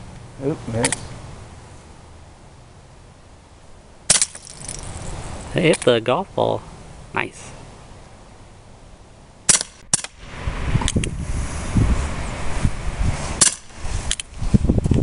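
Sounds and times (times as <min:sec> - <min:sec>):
air pistol pops: 0:09.5 - 0:10.2, 0:13.4 - 0:14.3.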